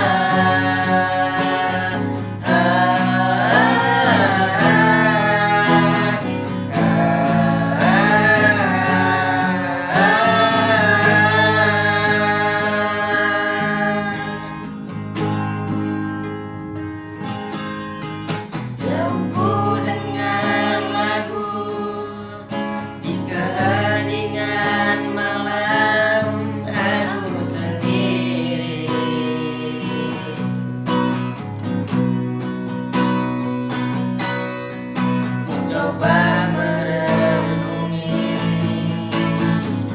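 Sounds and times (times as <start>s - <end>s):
person singing: 0.0s - 14.8s, 18.8s - 30.6s, 35.5s - 39.9s
strummed acoustic guitar: 0.0s - 39.9s.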